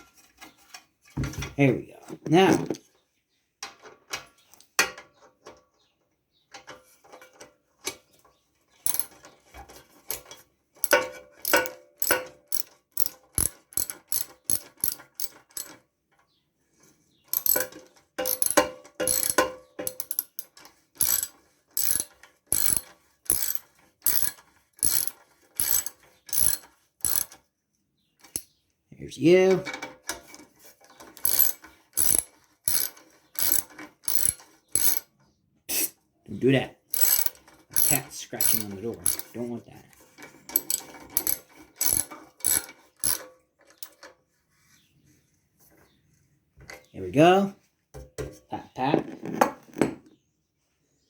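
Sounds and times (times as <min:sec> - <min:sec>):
ratchet wrench clicking: 0:08.9 - 0:09.2, 0:10.1 - 0:15.8, 0:17.3 - 0:27.4, 0:31.2 - 0:35.1, 0:36.9 - 0:39.3, 0:40.5 - 0:43.2.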